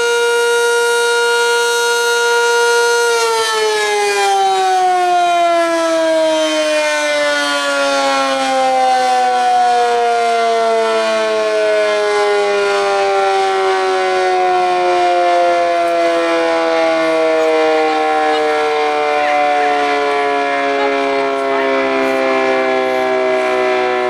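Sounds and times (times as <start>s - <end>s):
dual-tone siren winding down: 0.0s - 24.0s.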